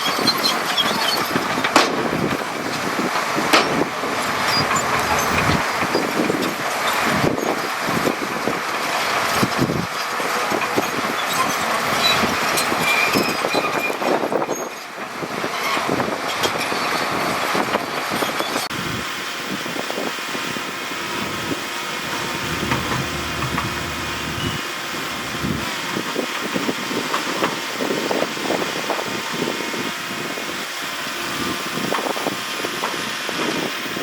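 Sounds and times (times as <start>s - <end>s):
heavy machinery engine running: 0.3s - 10.3s, 18.7s - 33.1s.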